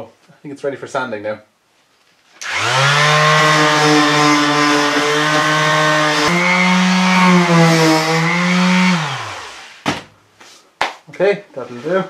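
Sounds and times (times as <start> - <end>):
electric sander sanding filler: 2.4 - 9.8.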